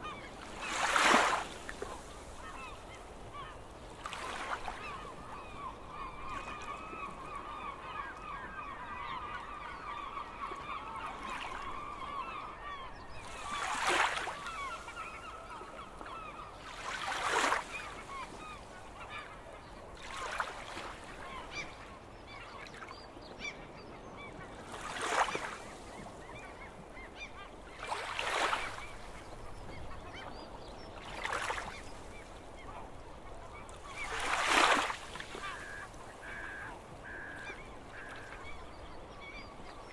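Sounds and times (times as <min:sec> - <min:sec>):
sea waves breaking: 0:00.0 - 0:05.0, 0:13.2 - 0:19.1, 0:33.5 - 0:38.7
seagulls calling: 0:00.0 - 0:22.6, 0:23.4 - 0:39.9.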